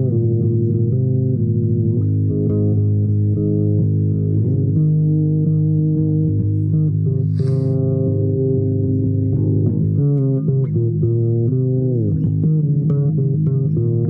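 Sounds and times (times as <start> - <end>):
bass guitar held notes: 0.0 - 14.0.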